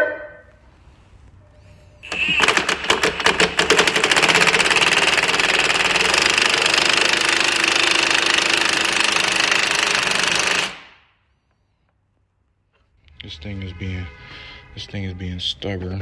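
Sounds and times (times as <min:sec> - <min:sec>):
impact wrench hammering: 0:02.0 - 0:11.0.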